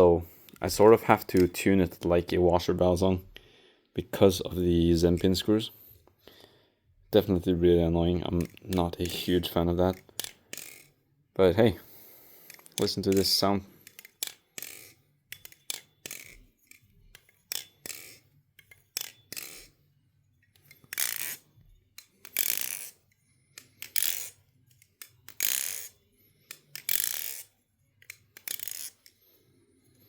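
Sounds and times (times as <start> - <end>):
metal knife handles clacking: 0.6 - 2.1, 8.0 - 10.9, 12.4 - 19.7.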